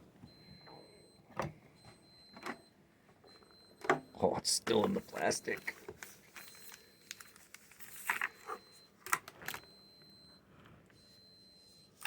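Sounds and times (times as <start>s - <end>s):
plastic wrapping crinkling: 5.0s - 9.7s.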